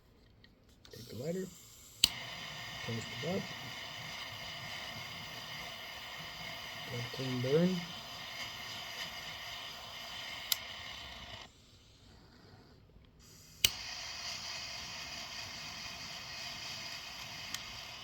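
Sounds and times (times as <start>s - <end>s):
torch lighter hissing: 0.9s - 11.9s, 13.2s - 18.0s
sharp ignition click: 2.0s - 11.5s, 13.6s - 18.0s.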